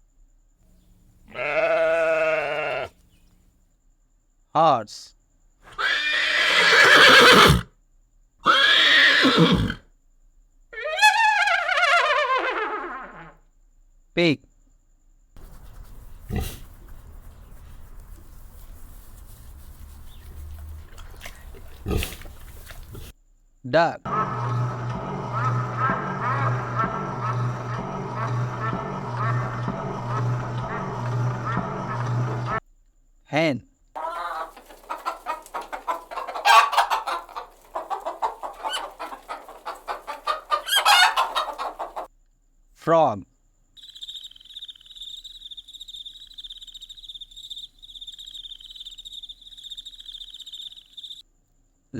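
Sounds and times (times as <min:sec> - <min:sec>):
background noise: 0:00.0 - 0:24.1, 0:32.6 - 0:51.9
hen squawk: 0:05.7 - 0:07.6, 0:08.5 - 0:09.8, 0:10.8 - 0:13.3, 0:24.1 - 0:32.6, 0:34.0 - 0:42.1
pig grunting: 0:15.4 - 0:17.6, 0:20.0 - 0:23.1, 0:24.1 - 0:32.6
hen clucking: 0:15.4 - 0:23.1, 0:24.1 - 0:32.6, 0:34.0 - 0:42.1.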